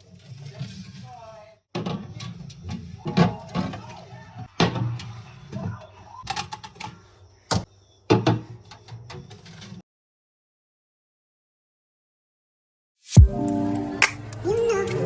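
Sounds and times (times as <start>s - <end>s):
sharp knocks and clatters: 1.8s - 9.8s.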